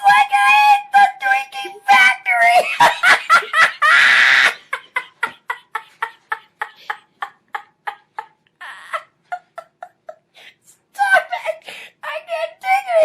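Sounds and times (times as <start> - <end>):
person laughing hard: 2.6 - 10.3.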